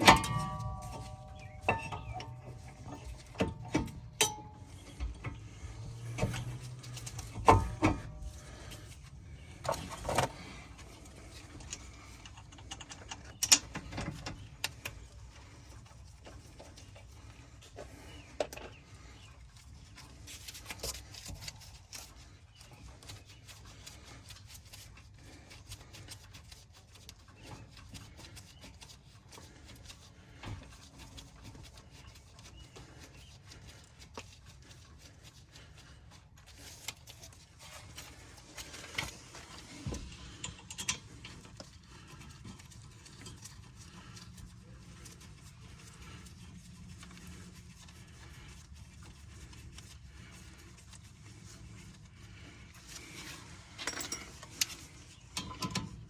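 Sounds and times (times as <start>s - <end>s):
hand tools clicking and knocking: 0.0s - 8.8s, 11.5s - 15.0s, 36.6s - 43.9s, 53.0s - 56.0s.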